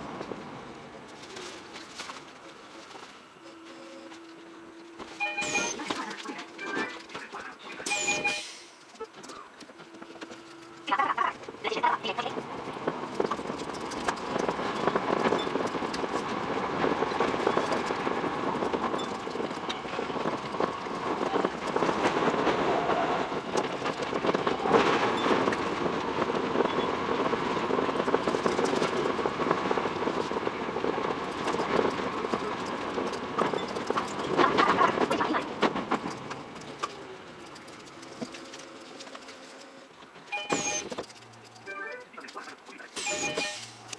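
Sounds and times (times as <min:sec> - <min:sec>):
train rushing noise: 0:00.0 - 0:39.4
rapid wheel clicks over rail joints: 0:08.8 - 0:22.6, 0:23.3 - 0:43.9.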